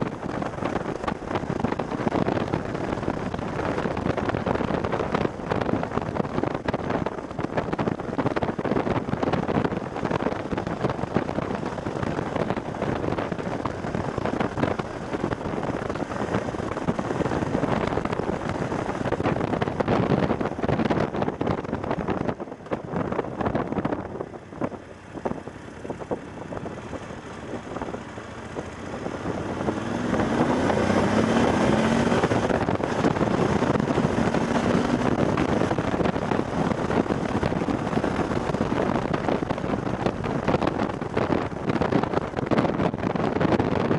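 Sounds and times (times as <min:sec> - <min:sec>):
motorcycle engine running: 0:00.0 - 0:43.9
wind buffeting microphone: 0:00.0 - 0:43.9.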